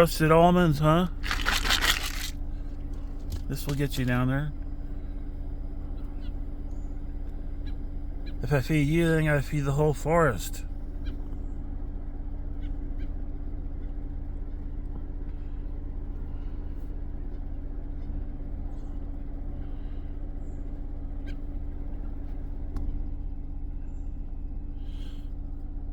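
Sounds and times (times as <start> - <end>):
car engine idling: 0.0 - 11.6
faint bird calls: 24.8 - 25.3.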